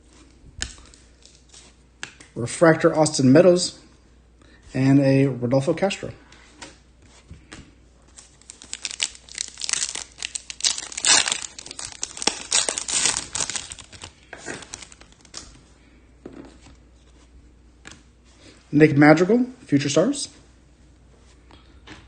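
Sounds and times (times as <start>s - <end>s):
foil wrapper crinkling and tearing: 8.2s - 15.5s.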